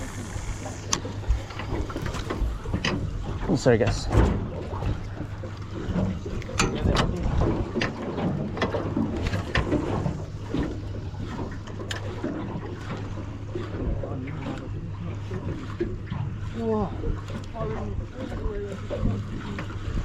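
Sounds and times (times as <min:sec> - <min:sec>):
outboard motor idling hum: 0:00.0 - 0:20.0
water slapping against hull: 0:00.0 - 0:20.0.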